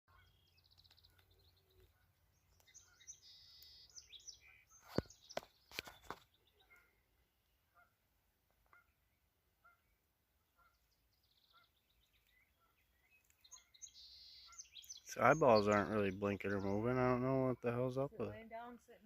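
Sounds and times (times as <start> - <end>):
small birds chirping: 0.1 - 19.0.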